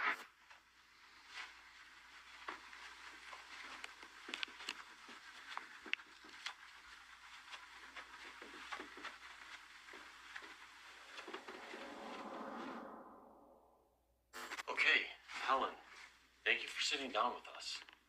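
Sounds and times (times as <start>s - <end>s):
faint irregular clicks and taps: 1.4s - 11.3s
low hiss: 14.4s - 18.0s.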